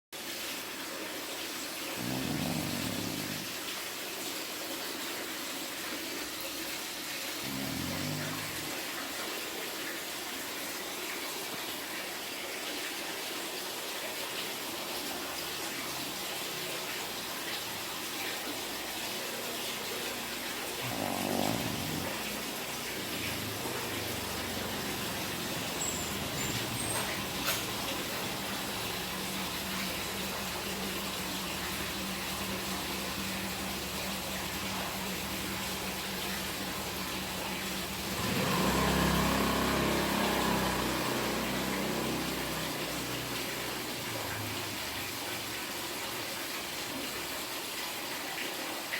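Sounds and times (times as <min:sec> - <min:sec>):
dog snoring: 0:01.9 - 0:03.8, 0:07.4 - 0:09.1, 0:19.6 - 0:31.7, 0:38.0 - 0:43.1.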